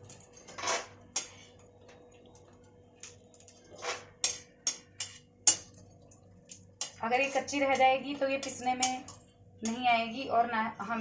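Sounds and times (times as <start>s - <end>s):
metal spatula scraping pan: 0.0s - 1.5s, 3.5s - 5.8s
spatula tapping pan: 4.1s - 5.9s, 6.5s - 9.8s.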